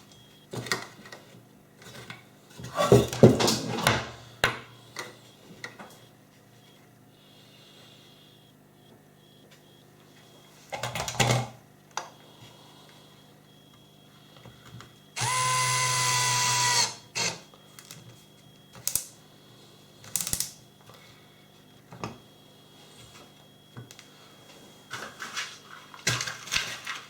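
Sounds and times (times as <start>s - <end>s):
power drill driving screw: 15.2s - 17.4s.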